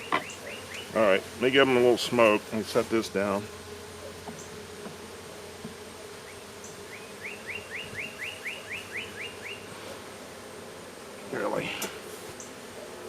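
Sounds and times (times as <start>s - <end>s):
bird chirping: 0.0s - 0.9s, 6.2s - 9.7s
bees buzzing: 0.0s - 13.0s.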